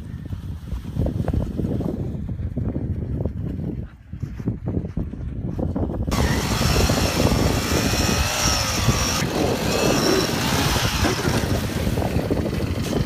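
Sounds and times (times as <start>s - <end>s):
small engine whining: 6.1s - 13.0s.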